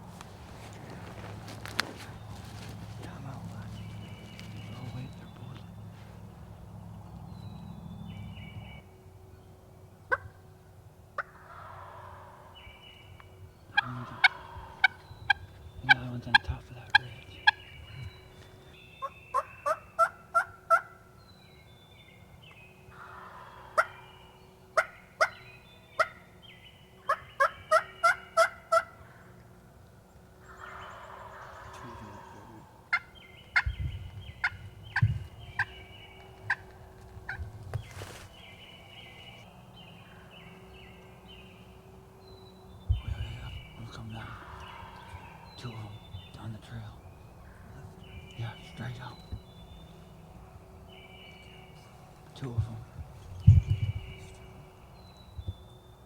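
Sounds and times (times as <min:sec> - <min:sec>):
turkey yelps: 0:11.2 - 0:12.6, 0:13.8 - 0:16.0, 0:19.0 - 0:21.0, 0:23.0 - 0:24.2, 0:27.1 - 0:29.2, 0:30.5 - 0:33.7, 0:44.2 - 0:45.7
turkey gobbling: 0:11.2 - 0:12.8, 0:13.7 - 0:17.7, 0:19.0 - 0:21.0, 0:23.0 - 0:25.4, 0:26.0 - 0:26.2, 0:27.0 - 0:29.3, 0:30.4 - 0:33.8, 0:35.6 - 0:37.4, 0:43.5 - 0:46.4
wind rumble on microphone: 0:13.0 - 0:19.0, 0:31.6 - 0:40.2, 0:42.3 - 0:56.0.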